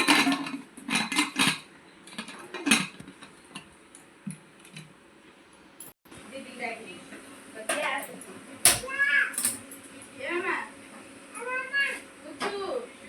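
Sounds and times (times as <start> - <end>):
metal cookware clinking: 0.0 - 3.0.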